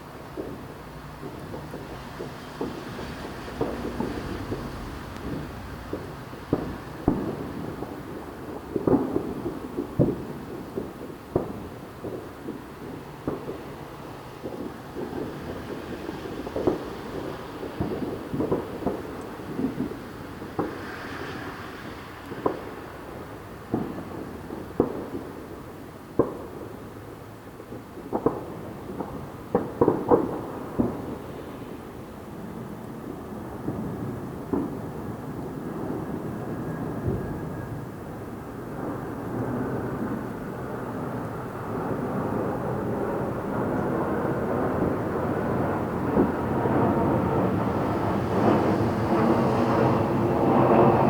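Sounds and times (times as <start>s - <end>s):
distant fireworks bangs: 0.2s - 31.8s, 32.4s - 51.0s
sharp firework bang: 1.5s - 8.0s.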